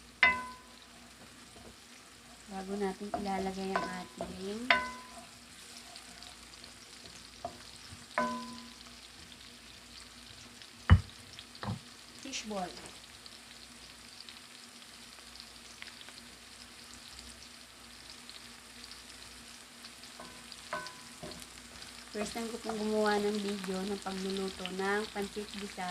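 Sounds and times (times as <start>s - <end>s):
onion and garlic sizzling in oil: 0.0s - 25.9s
metal utensil clinking on pan: 0.2s - 0.8s, 3.1s - 5.3s, 8.2s - 8.8s, 20.2s - 21.4s.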